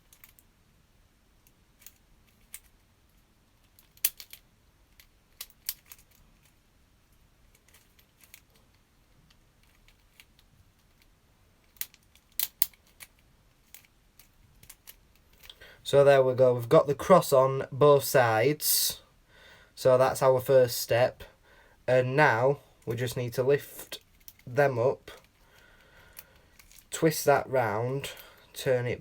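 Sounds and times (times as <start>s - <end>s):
plastic puzzle clicks and clacks: 3.6s - 6.6s, 7.4s - 15.6s.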